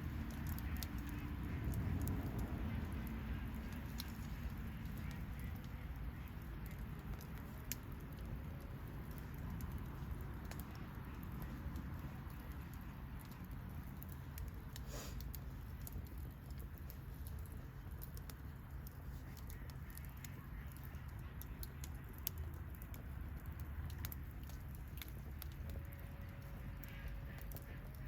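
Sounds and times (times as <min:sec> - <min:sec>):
bonfire crackling: 0:00.0 - 0:28.0.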